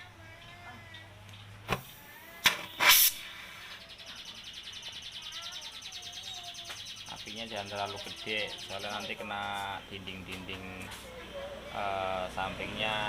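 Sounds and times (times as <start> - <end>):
gas torch flame hissing: 2.4 - 3.5.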